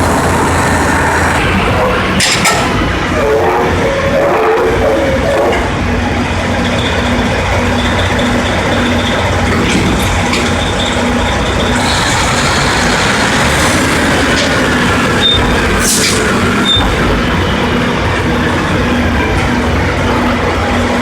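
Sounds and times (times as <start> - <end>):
drilling rig machinery running: 0.0 - 21.0.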